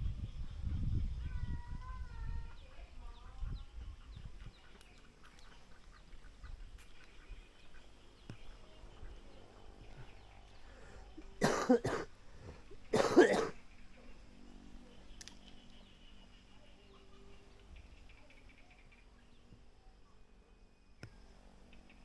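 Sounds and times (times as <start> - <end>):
person coughing: 11.4 - 12.1, 12.9 - 13.6.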